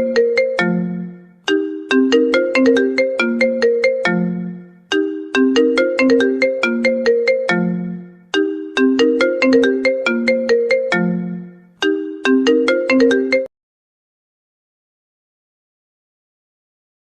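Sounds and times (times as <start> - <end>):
mallet-like phone ringtone: 0.0 - 13.5.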